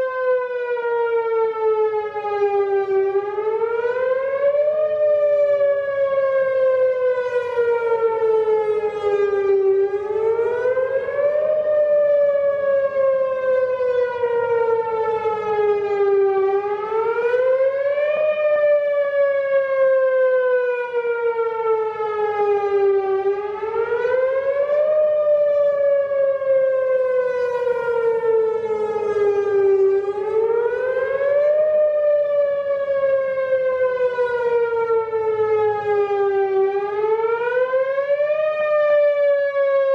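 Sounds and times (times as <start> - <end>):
warning siren whooping: 0.0 - 39.9.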